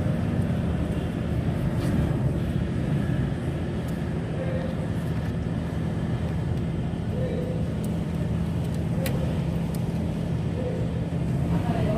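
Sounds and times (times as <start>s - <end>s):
engine humming: 0.0s - 11.9s.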